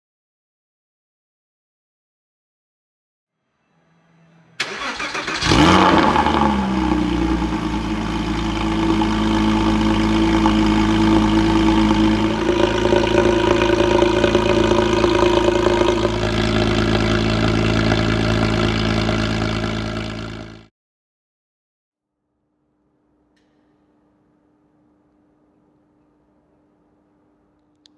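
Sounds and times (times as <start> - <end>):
starter motor cranking: 4.6 - 6.6
car engine revving and idling: 4.6 - 20.7.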